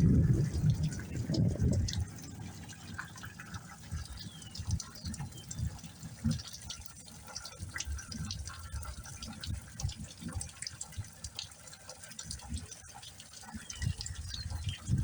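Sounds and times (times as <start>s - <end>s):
low rumble: 0.0s - 2.4s
rain falling and dripping: 0.0s - 15.0s
sharp drip ticks: 0.0s - 15.0s.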